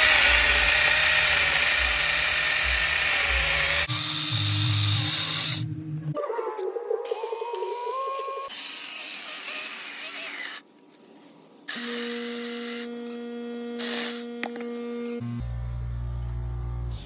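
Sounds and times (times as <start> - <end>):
mini chainsaw cutting logs: 0.0 - 5.6.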